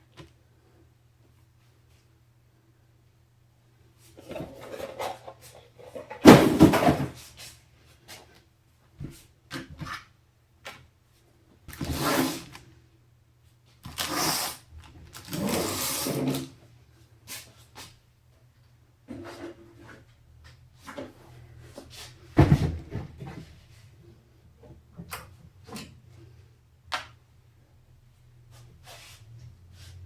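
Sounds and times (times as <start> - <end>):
computer parts rustling and knocking: 4.2 - 7.2.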